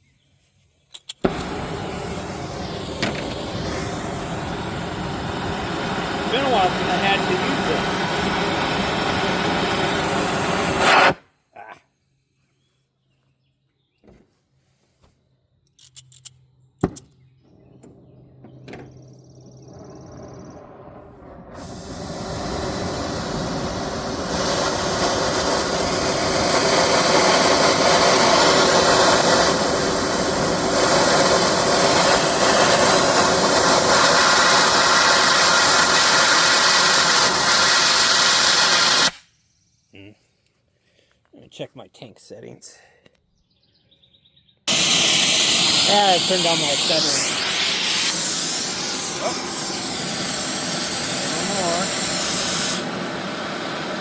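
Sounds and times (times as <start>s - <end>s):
torch igniter click: 0.9s - 5.5s
gas torch flame roaring: 1.2s - 11.2s, 17.4s - 39.3s, 44.7s - 54.0s.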